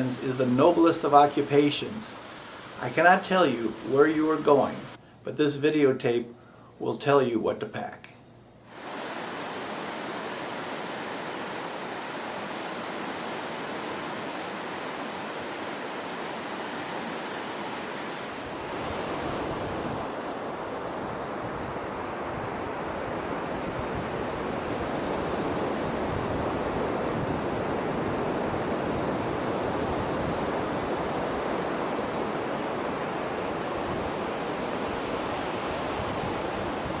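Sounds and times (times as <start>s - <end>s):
flowing water rushing: 0.0s - 5.0s, 8.8s - 22.2s, 30.2s - 37.0s.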